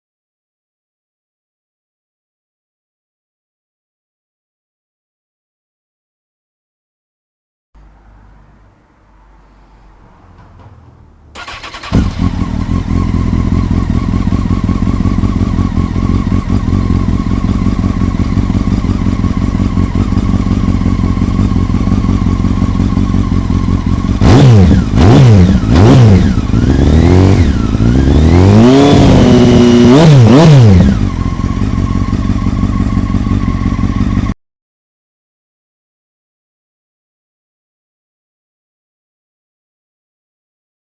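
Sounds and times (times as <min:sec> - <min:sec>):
motorcycle engine revving: 0:07.8 - 0:34.4
motorcycle engine starting and idling: 0:07.8 - 0:34.4.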